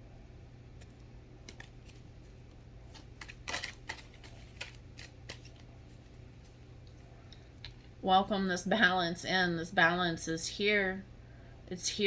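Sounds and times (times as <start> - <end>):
faint steady hum: 0.0 - 12.0
cards clicking and swishing: 0.8 - 6.1.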